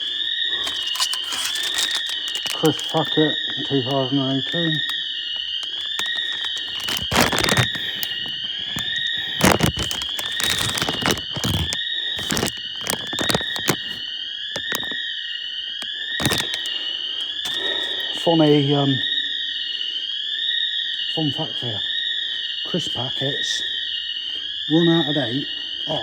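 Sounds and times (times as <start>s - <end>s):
sharp crackles and rustles: 0.0s - 14.0s, 14.6s - 15.0s, 15.8s - 16.8s
intruder alarm sounder blaring: 2.6s - 6.2s.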